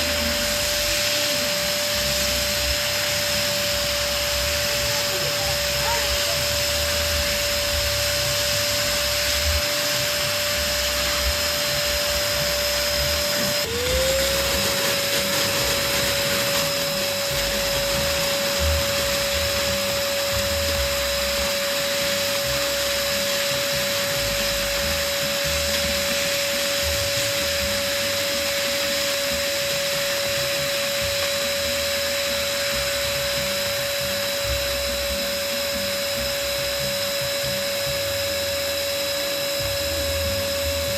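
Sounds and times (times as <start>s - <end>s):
air hiss: 0.0s - 32.1s
electric balloon pump whining: 0.0s - 40.9s.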